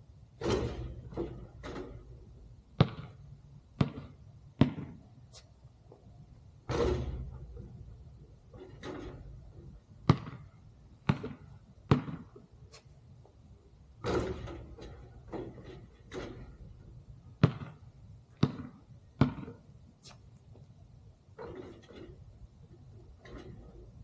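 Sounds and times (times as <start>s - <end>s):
basketball bouncing: 0.4s - 5.0s, 6.7s - 12.6s, 14.0s - 19.7s.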